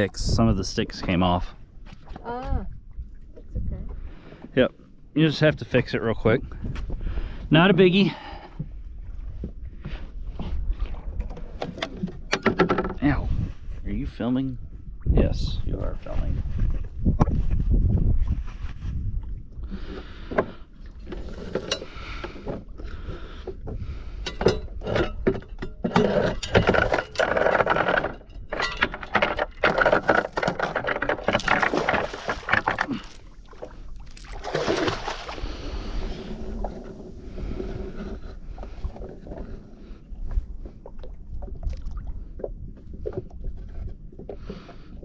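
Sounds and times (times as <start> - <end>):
low rumble of wind and water: 0.0 - 45.0
gear knocking and clattering: 24.5 - 33.2.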